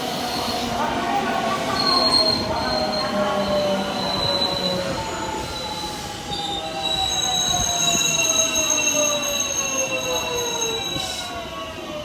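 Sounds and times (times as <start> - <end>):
high steady whistling tones: 2.3 - 12.0.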